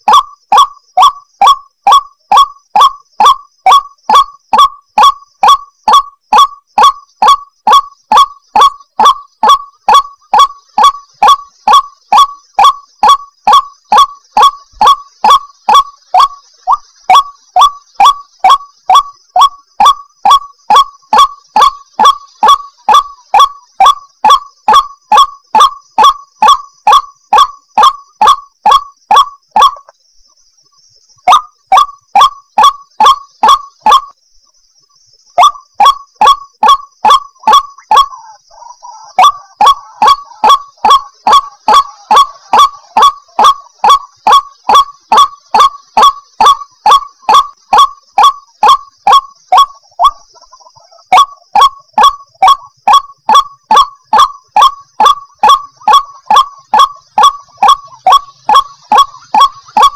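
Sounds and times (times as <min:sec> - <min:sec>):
waterhen harsh calls: 0:00.0 - 0:29.9, 0:31.3 - 0:34.1, 0:35.4 - 0:59.9
fainter waterhen call: 0:00.0 - 0:30.0, 0:30.6 - 0:34.2, 0:34.8 - 0:59.9.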